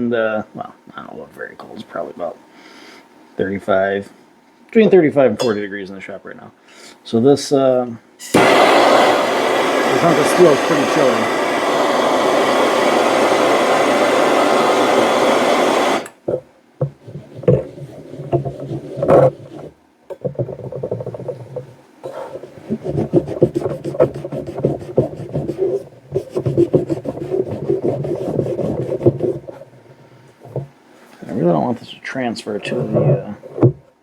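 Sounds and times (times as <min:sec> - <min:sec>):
steady blowing noise: 0:08.3 - 0:16.2.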